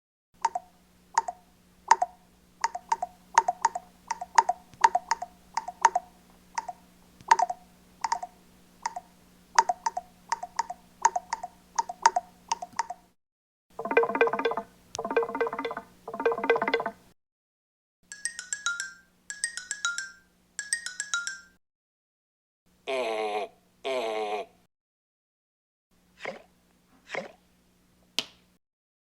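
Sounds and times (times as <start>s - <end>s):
faint steady hum: 0.4s - 13.2s
plucked guitar music: 13.8s - 17.0s.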